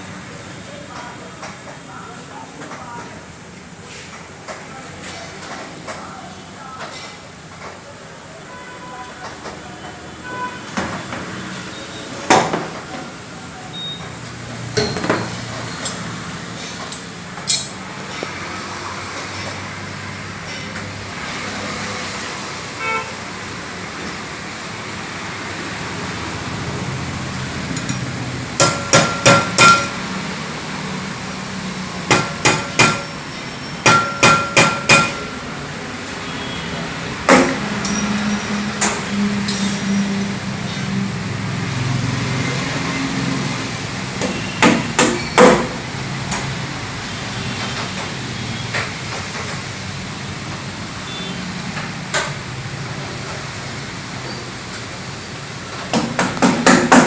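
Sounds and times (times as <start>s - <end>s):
sharp metallic knocks and clinks: 14.7s - 16.1s, 27.8s - 30.0s, 32.1s - 35.3s, 37.3s - 40.0s.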